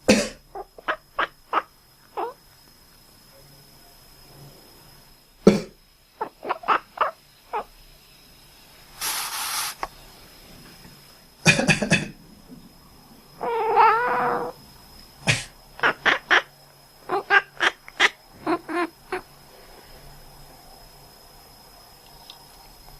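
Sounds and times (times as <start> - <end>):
cat hissing: 9.0 - 9.8, 13.4 - 14.6, 15.3 - 16.5, 17.1 - 19.3
person coughing: 11.5 - 12.2
cat wavering call: 13.4 - 14.6.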